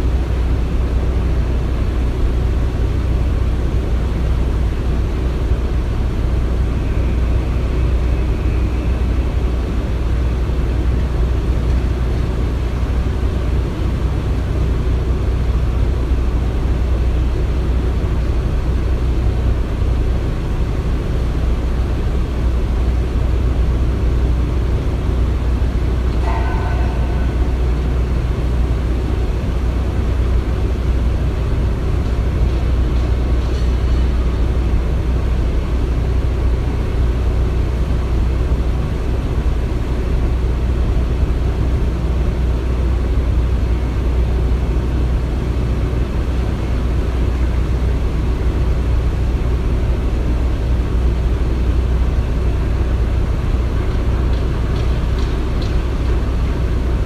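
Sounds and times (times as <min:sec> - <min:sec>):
construction machinery rumbling: 0:00.0 - 0:57.0
faint high ring: 0:26.2 - 0:28.5.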